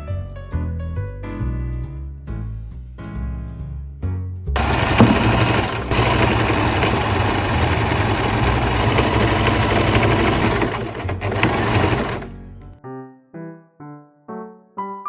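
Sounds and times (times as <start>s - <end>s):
sewing machine stitching: 4.6s - 12.7s.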